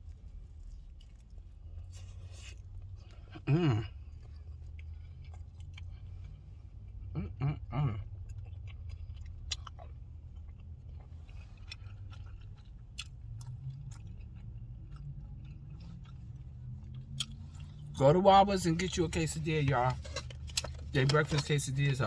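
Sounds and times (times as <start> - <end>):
person chewing food: 0.0 - 18.0, 18.7 - 22.0
steady low hum: 0.0 - 22.0
person humming mmm: 3.4 - 3.9, 7.2 - 8.0.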